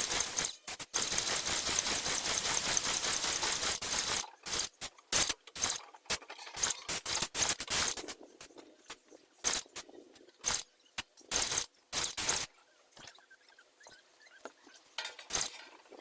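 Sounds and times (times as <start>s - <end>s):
paint sprayer hissing: 0.0s - 5.8s.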